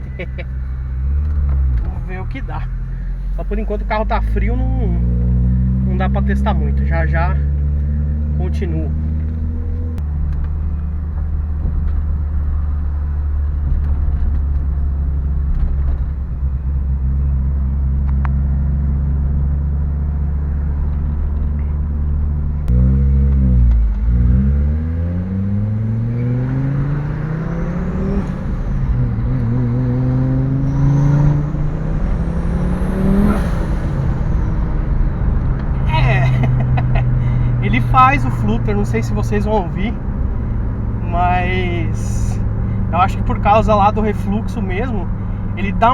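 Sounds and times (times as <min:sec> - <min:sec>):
car engine droning: 0:00.0 - 0:45.9
faint high turbo whistles: 0:25.3 - 0:45.9.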